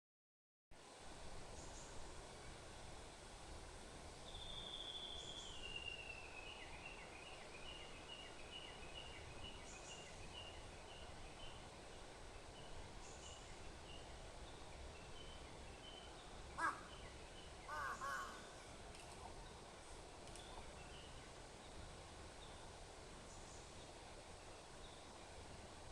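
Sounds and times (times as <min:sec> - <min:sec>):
crow cawing: 0:16.6 - 0:16.9, 0:17.7 - 0:18.5.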